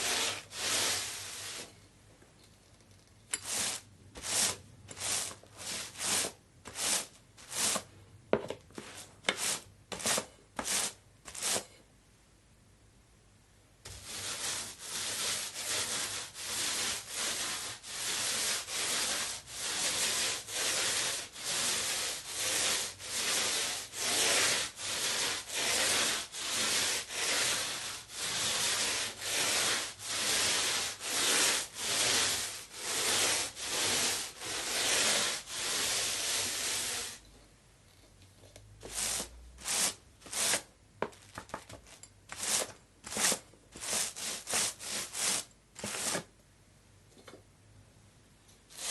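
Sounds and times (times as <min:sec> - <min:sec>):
paint roller rubbing strokes: 0:00.0 - 0:01.8, 0:03.4 - 0:07.9, 0:08.8 - 0:11.7, 0:13.9 - 0:37.2, 0:38.8 - 0:40.7, 0:42.3 - 0:46.3.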